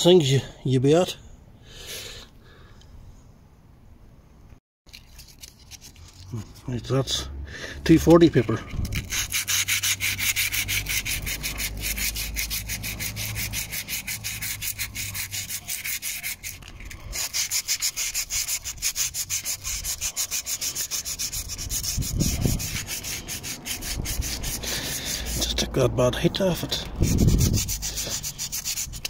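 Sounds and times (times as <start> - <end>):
sandpaper rubbing on wheel rim: 7.9 - 25.8, 26.4 - 29.0.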